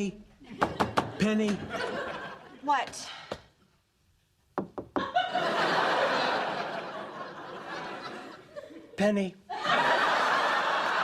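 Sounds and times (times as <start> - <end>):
studio audience laughing: 0.5 - 2.6, 5.0 - 11.0
knocking on a door: 4.6 - 5.1.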